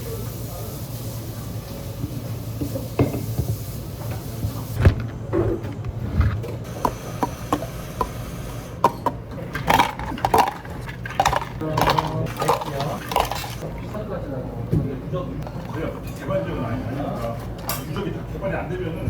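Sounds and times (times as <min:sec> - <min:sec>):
knocks and clinks of drink-making: 0:02.0 - 0:03.6, 0:08.8 - 0:14.0.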